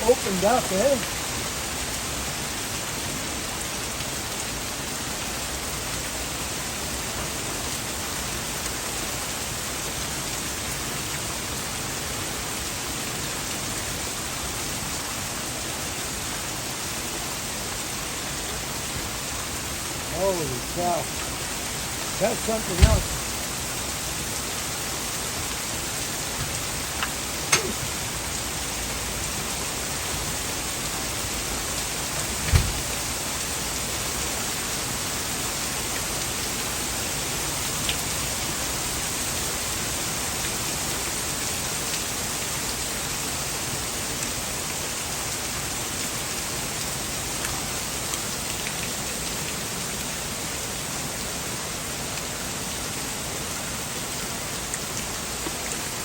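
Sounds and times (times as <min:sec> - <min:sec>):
hail and heavy rain pattering: 0:00.0 - 0:56.0
loud knocks: 0:22.8 - 0:23.3.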